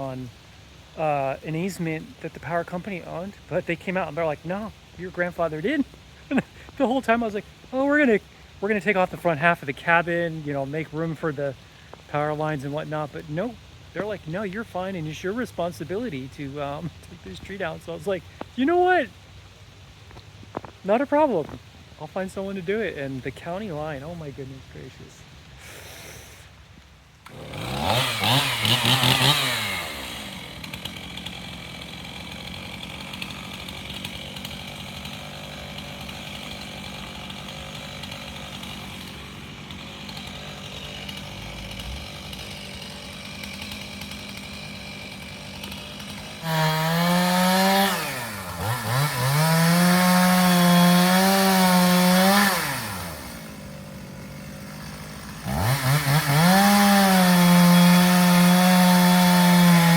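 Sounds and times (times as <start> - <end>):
chainsaw idling: 0.0 - 19.5, 27.2 - 59.9
chainsaw revving: 0.9 - 11.3, 27.2 - 59.9.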